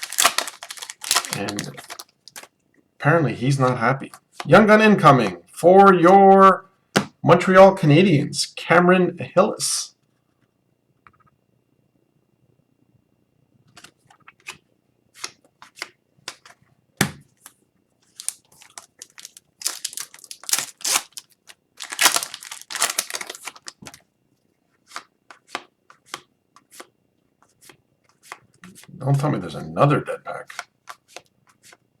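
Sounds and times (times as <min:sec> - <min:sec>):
card wrappers crinkling: 0:00.0 - 0:02.5, 0:18.0 - 0:24.0
wrapper tearing: 0:00.0 - 0:02.5, 0:18.1 - 0:24.0.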